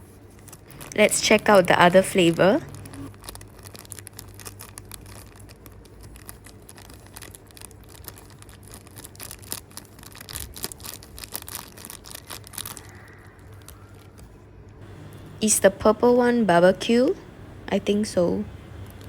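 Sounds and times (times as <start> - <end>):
plastic packaging crinkling: 0.2 - 15.4, 18.6 - 19.0.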